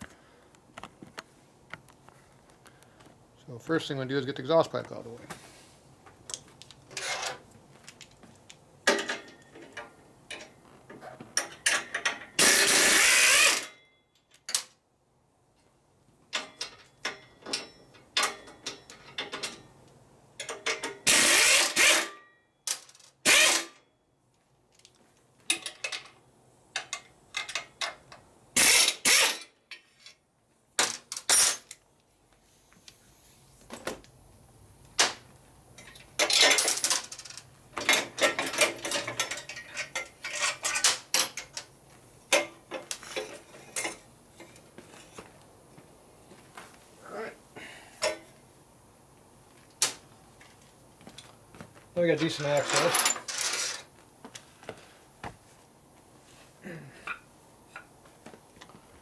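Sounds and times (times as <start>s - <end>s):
clinks and knocks of tools: 6.3s - 12.6s, 13.6s - 14.8s, 16.3s - 19.8s, 20.4s - 21.1s, 24.7s - 30.2s, 35.8s - 45.8s, 48.0s - 48.4s, 52.2s - 54.5s.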